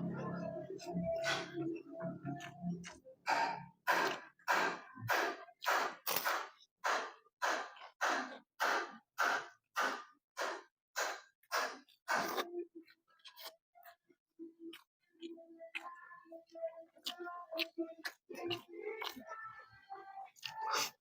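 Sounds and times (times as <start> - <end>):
person breathing hard: 3.3 - 12.4.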